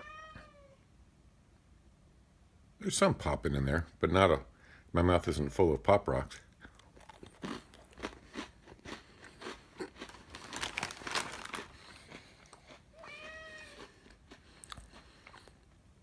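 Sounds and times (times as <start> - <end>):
cat meowing: 0.0 - 0.8, 12.9 - 13.9
cookie crunching: 6.6 - 15.7.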